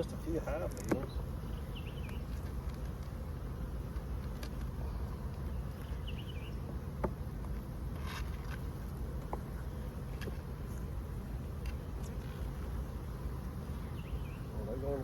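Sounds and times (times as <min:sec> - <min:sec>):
honeybees buzzing: 0:00.0 - 0:15.0
bird chirps: 0:01.0 - 0:02.3, 0:05.4 - 0:06.7, 0:13.8 - 0:14.5.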